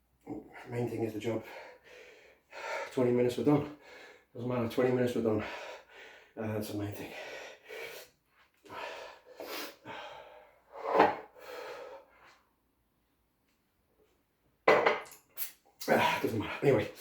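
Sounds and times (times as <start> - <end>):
man breathing hard: 1.4 - 2.9, 3.7 - 4.3, 5.4 - 6.4, 7.0 - 12.4.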